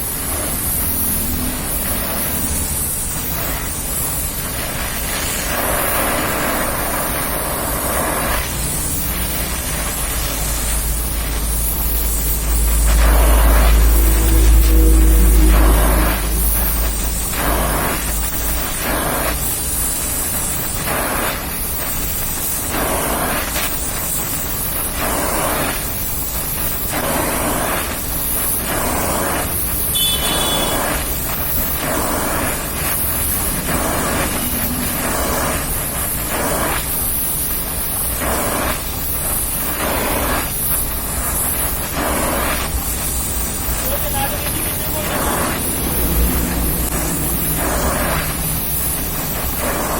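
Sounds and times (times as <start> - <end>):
welding torch flame hissing: 0.0 - 49.9.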